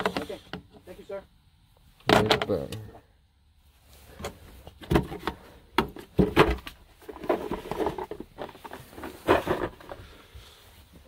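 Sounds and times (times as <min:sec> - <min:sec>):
rubbing and shuffling: 0:03.6 - 0:11.0.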